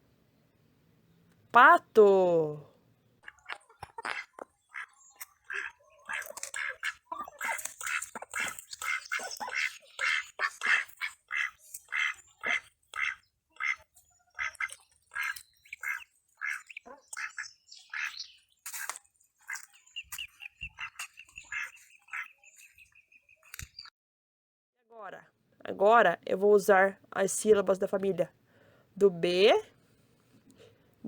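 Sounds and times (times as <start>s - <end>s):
duck quacking: 3.2s - 18.2s, 19.5s - 22.4s.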